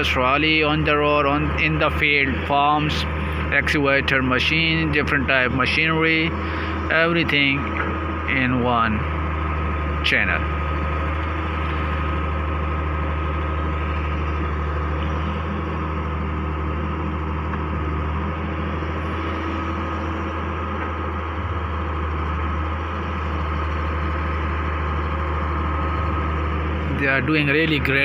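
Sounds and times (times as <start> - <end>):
diesel engine running: 0.0 - 28.0.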